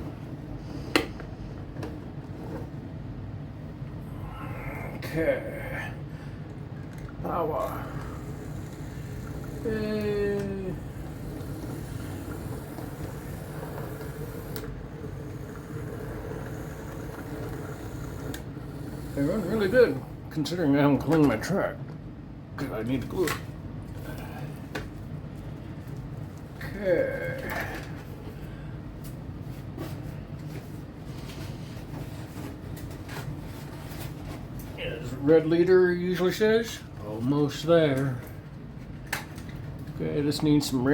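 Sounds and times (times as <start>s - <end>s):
model train motor whirring: 7.7s - 20.1s.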